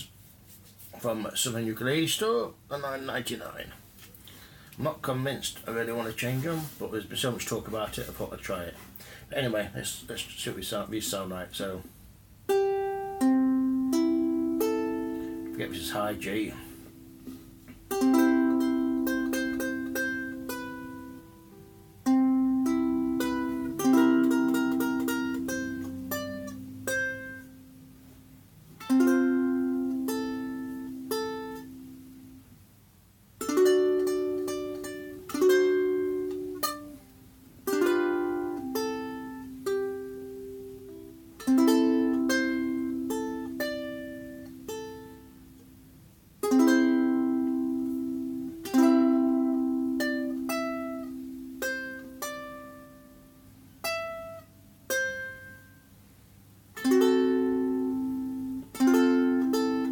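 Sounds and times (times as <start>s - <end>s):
ukulele plucked tune: 12.5s - 32.4s, 33.4s - 55.9s, 56.7s - 59.9s.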